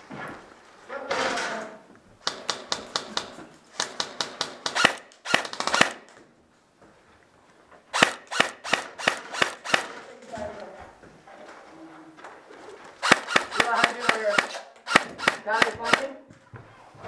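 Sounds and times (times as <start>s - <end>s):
airsoft guns firing: 2.2s - 6.2s, 7.9s - 10.1s, 13.0s - 16.2s.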